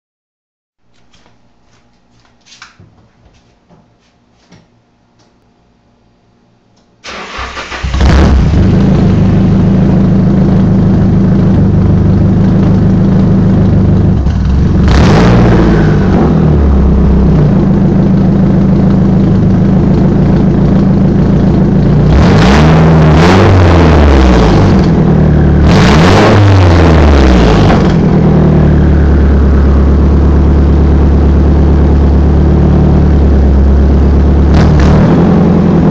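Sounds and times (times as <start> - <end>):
car engine idling loudly: 8.6 - 22.2, 24.0 - 35.9
engine revving with turbo whistle: 12.6 - 17.7, 21.9 - 33.0, 33.6 - 35.9.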